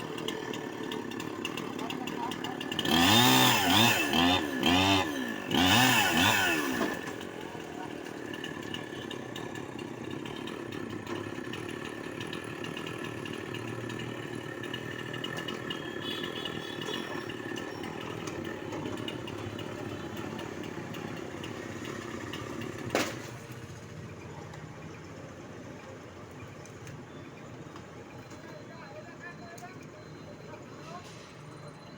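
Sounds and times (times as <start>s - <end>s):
chainsaw cutting tree: 0.0s - 23.2s.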